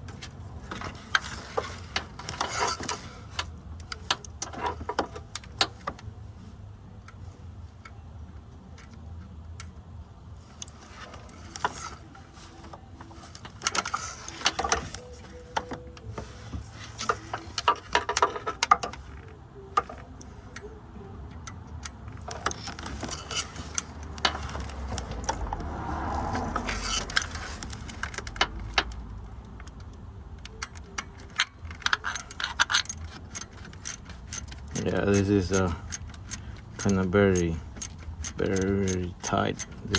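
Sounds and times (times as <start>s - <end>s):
ratchet wrench clicking: 26.6s - 39.9s.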